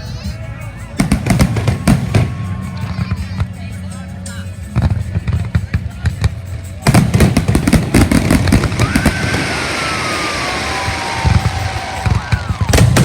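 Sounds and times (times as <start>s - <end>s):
fireworks crackling: 0.1s - 13.0s
firework bang: 6.8s - 13.0s
falling firework whistle: 6.9s - 13.0s.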